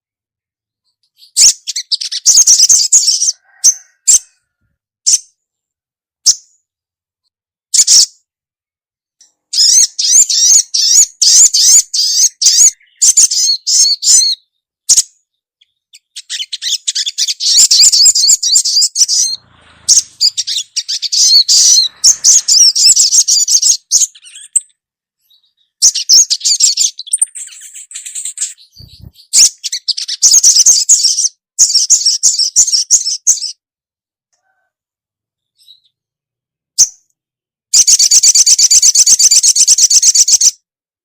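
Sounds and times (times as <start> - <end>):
bird rapid high chirps: 1.0 - 4.4, 9.5 - 33.6.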